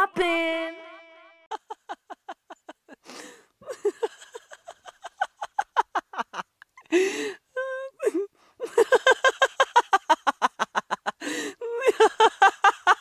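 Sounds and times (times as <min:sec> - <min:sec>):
woman laughing: 0:01.4 - 0:13.0.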